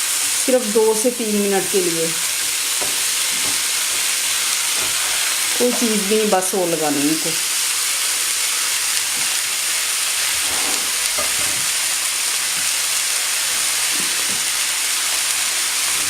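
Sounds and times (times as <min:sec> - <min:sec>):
vegetables sizzling in a pan: 0:00.0 - 0:16.0.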